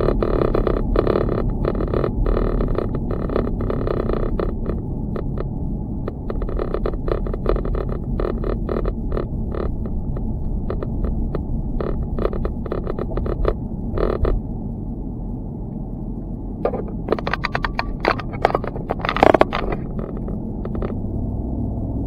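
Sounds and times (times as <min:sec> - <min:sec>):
low rumble: 0:00.0 - 0:22.0
camera mount rattling: 0:16.7 - 0:21.0.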